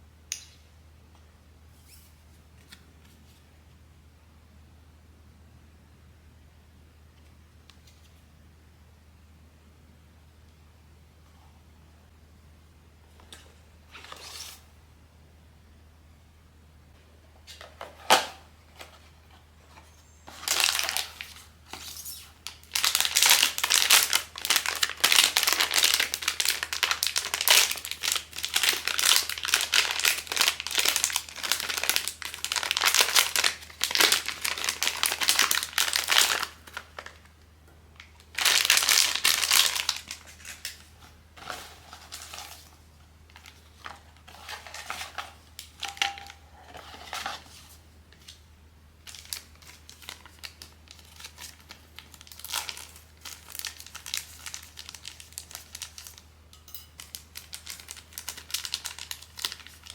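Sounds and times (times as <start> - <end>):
plastic packaging crinkling: 20.2 - 37.4, 38.0 - 48.4, 49.0 - 56.3, 57.0 - 59.9.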